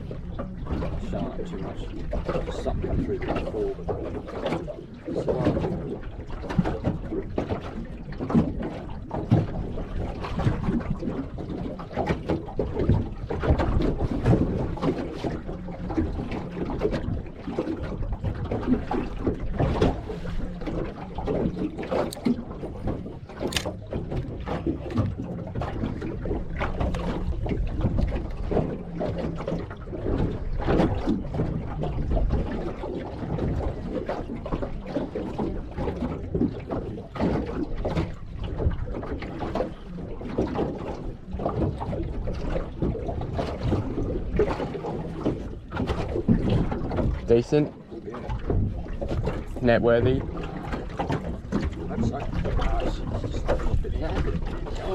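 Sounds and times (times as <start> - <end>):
water sloshing against hull: 0.0 - 54.9
wind buffeting microphone: 0.0 - 54.9
sharp clicks: 23.4 - 23.8.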